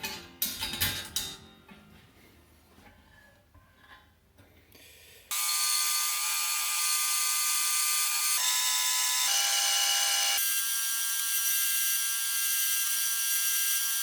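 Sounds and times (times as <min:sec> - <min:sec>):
power tool whining: 0:05.3 - 0:14.0.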